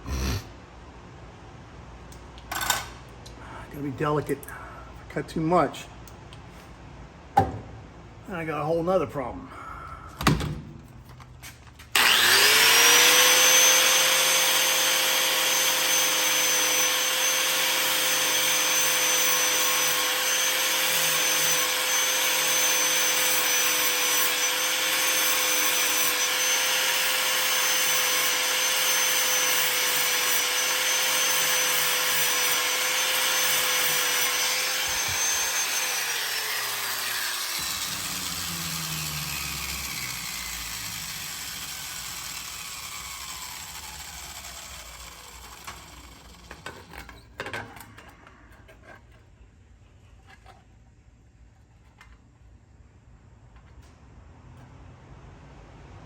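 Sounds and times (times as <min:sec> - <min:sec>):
power tool spinning down whine: 0:11.9 - 0:47.1
power tool cutting metal: 0:11.9 - 0:47.2.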